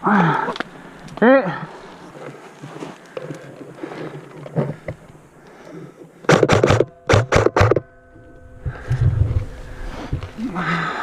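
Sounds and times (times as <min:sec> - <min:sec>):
airsoft rifle firing: 0:06.3 - 0:07.8.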